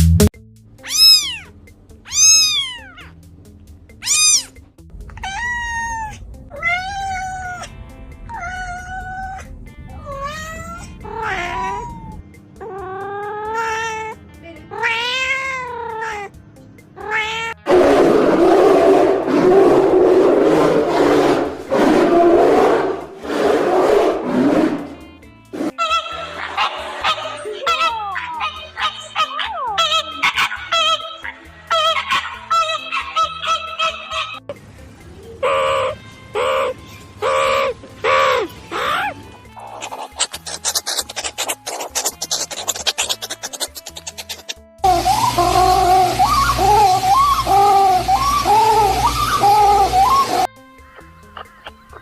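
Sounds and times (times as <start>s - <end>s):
meow-like animal cries: 0.8s - 3.2s, 4.0s - 16.4s, 17.0s - 17.7s, 44.1s - 52.0s.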